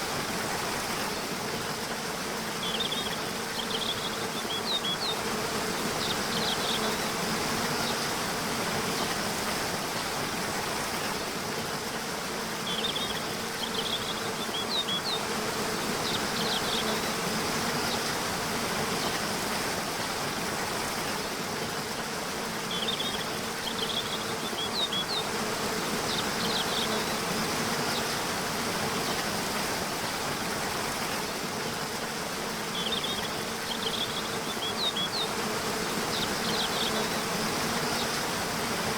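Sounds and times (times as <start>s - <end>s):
birdsong: 1.9s - 9.3s, 11.8s - 19.4s, 21.8s - 29.7s, 31.9s - 38.9s.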